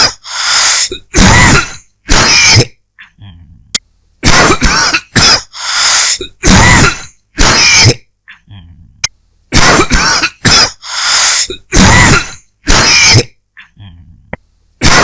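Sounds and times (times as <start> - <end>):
person coughing dry hacking cough: 0.0 - 3.2, 4.2 - 8.1, 9.5 - 13.7.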